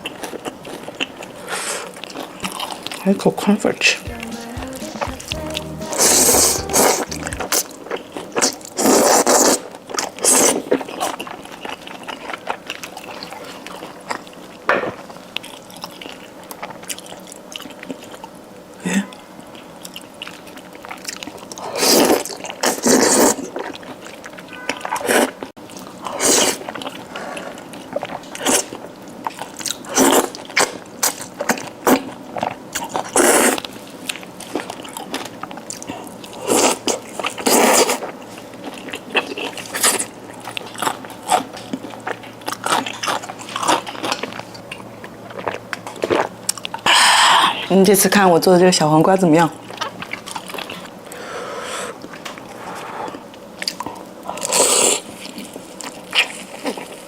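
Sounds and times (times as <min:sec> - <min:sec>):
wet chewing: 0:08.3 - 0:18.4, 0:19.5 - 0:47.0, 0:49.6 - 0:51.2.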